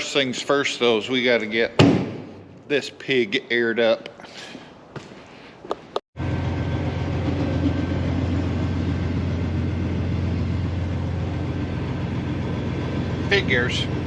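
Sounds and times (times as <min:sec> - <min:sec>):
air compressor building pressure: 0:06.2 - 0:14.0
diesel engine idling: 0:06.2 - 0:14.0.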